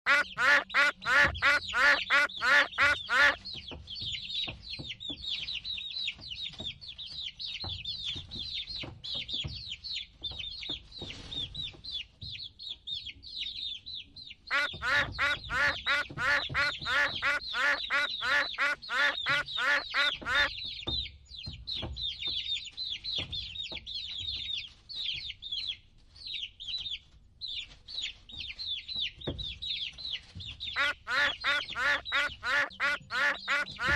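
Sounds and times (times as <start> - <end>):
baby chicks peeping: 0.1 - 33.9.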